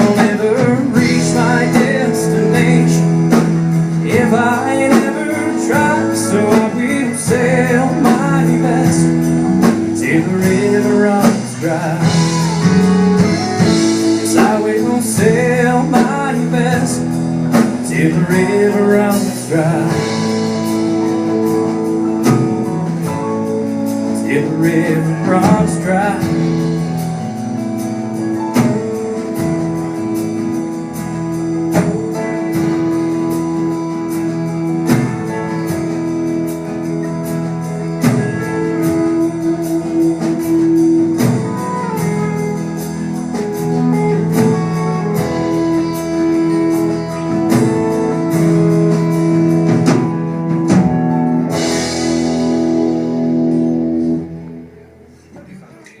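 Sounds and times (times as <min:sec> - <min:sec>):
country guitar chords ringing: 0:00.0 - 0:55.6.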